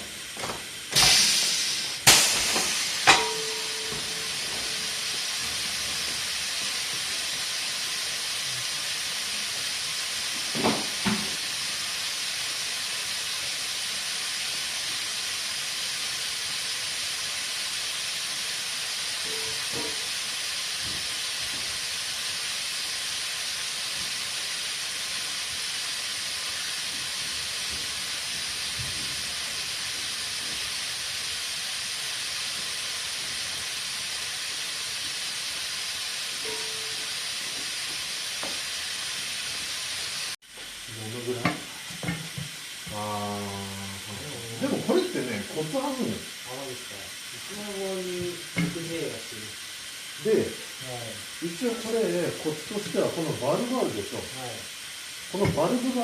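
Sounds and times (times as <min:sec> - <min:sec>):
compressed air hissing: 0:00.0 - 0:40.4.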